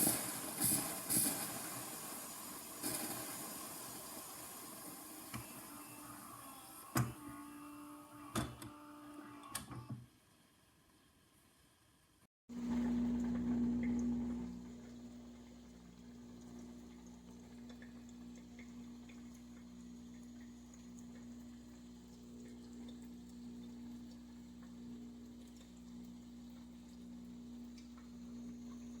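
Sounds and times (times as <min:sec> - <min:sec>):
espresso machine hum: 0:04.8 - 0:09.5
water drips and ticks: 0:12.5 - 0:29.0.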